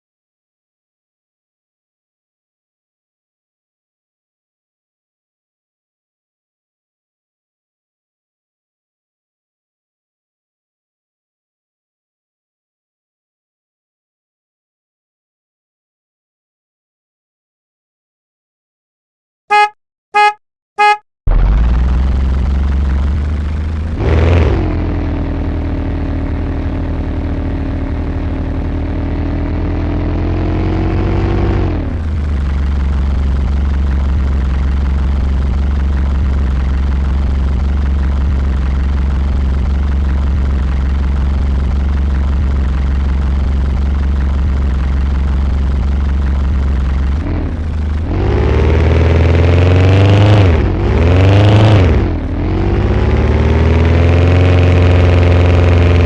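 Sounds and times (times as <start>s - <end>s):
deep bass: 21.3s - 56.0s.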